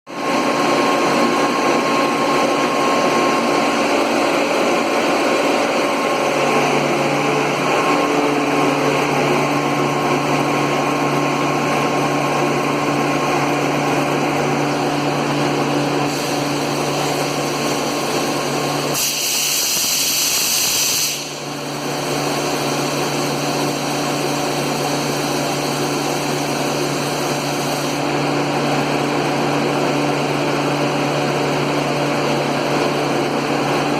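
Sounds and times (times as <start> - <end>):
air compressor humming: 0.1 - 33.9
loud hiss of air: 16.0 - 28.2.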